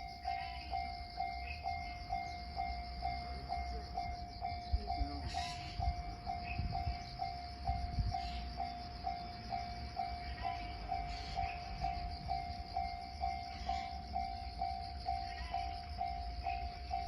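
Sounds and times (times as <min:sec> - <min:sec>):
freight train rumbling: 0:00.0 - 0:17.0
level-crossing warning bell ringing: 0:00.0 - 0:17.0.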